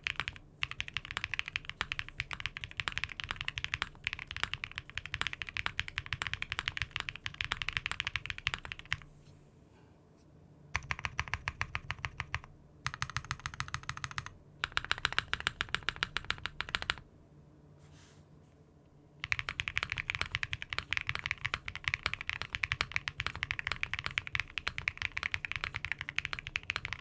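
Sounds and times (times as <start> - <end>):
mechanical keyboard typing: 0.0 - 9.1, 10.8 - 17.0, 19.2 - 27.0.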